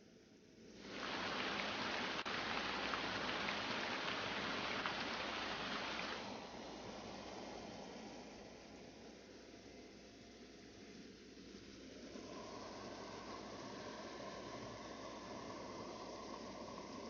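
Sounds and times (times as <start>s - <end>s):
rain falling on a surface: 0.8s - 6.5s.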